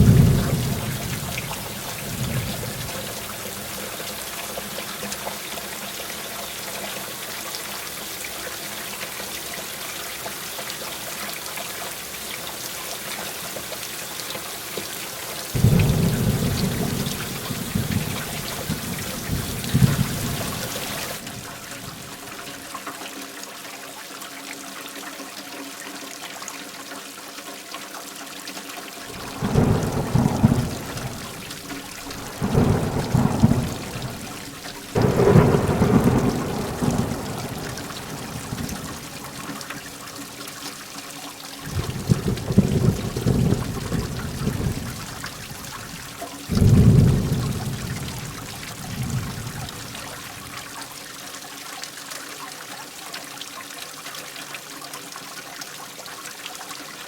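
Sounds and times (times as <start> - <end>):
thunder rolls: 0.0 - 3.6, 15.5 - 22.2, 29.1 - 39.9, 41.7 - 50.6
heavy rain: 0.0 - 23.0, 29.0 - 51.3.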